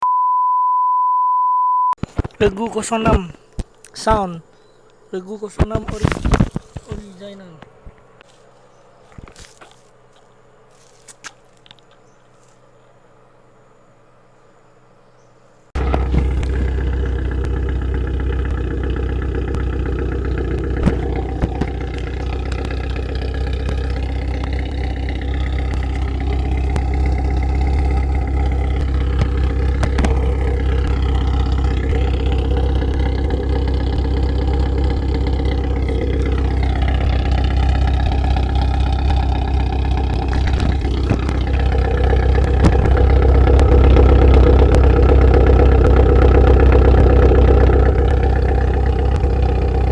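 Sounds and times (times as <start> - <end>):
car engine idling: 2.2 - 49.9.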